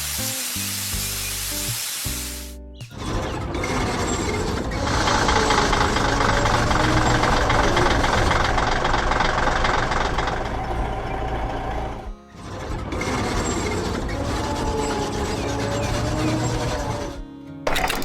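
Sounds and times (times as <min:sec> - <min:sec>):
heavy machinery engine rattling: 0:02.9 - 0:18.0.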